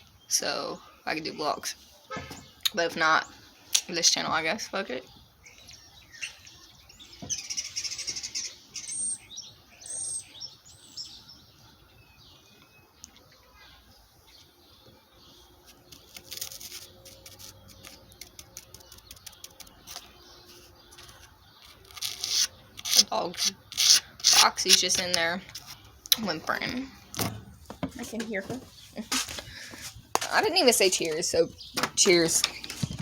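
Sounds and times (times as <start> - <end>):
quick clicks and scraping: 15.7 - 25.8.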